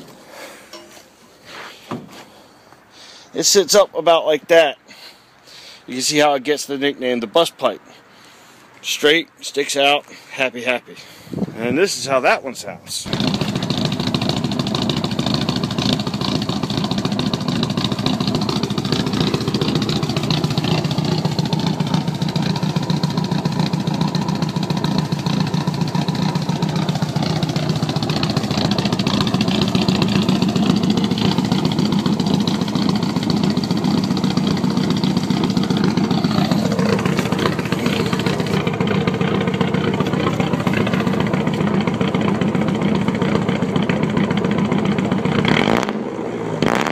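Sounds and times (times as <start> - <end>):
car engine revving through exhaust: 13.1 - 46.9.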